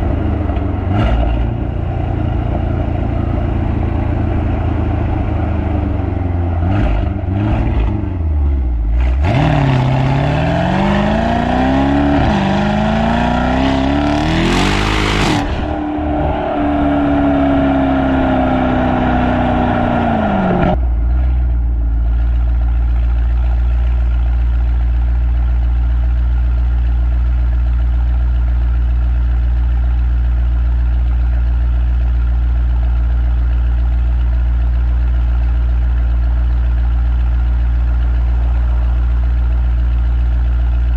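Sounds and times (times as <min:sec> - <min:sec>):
engine deep idle: 0:00.0 - 0:09.2, 0:20.8 - 0:40.9
car engine revving: 0:00.0 - 0:22.3.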